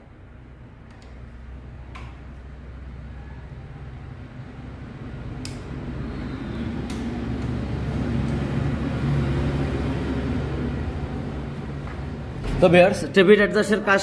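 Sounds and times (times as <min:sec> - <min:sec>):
vehicle engine running: 0:02.5 - 0:13.0.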